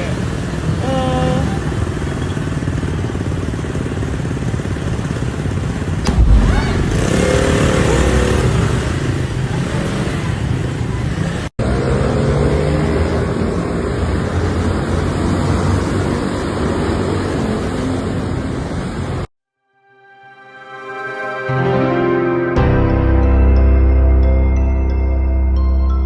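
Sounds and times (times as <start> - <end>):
vehicle engine running: 0.0 - 11.5
rushing noise: 2.6 - 11.5
low thump: 6.0 - 7.4.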